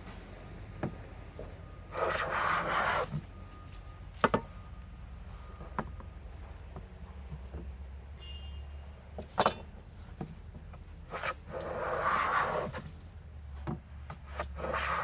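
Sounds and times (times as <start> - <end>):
hand plane stroke on wood: 2.0 - 3.1, 11.1 - 12.8, 14.1 - 15.0.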